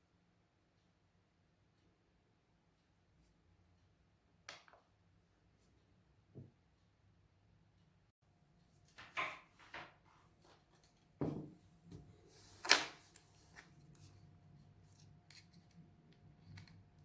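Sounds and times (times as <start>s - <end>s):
objects clicking and scraping: 12.5s - 17.0s.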